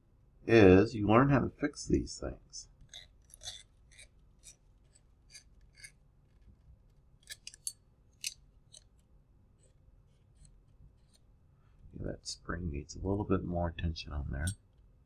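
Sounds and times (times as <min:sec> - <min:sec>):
small parts clicking: 0:07.2 - 0:09.7.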